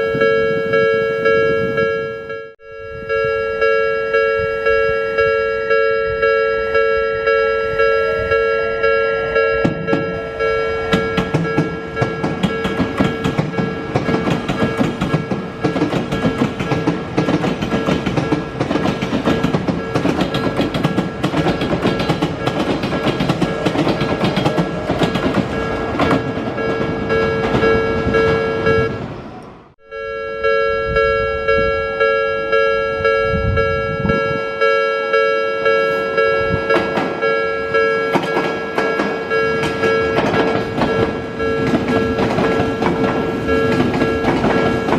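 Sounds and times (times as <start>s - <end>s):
level-crossing alarm ringing: 0.0s - 29.1s, 29.8s - 44.9s
train wheels clicking over rail joints: 9.6s - 29.0s, 36.5s - 44.9s.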